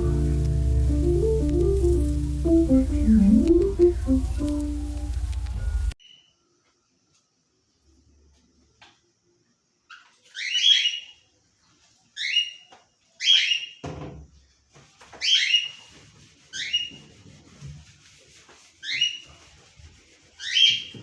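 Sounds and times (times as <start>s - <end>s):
bird chirping: 9.9s - 11.3s.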